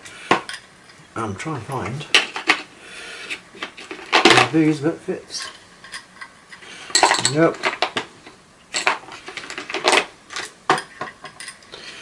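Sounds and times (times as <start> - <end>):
metal screwdriver bits clinking: 6.9 - 7.9.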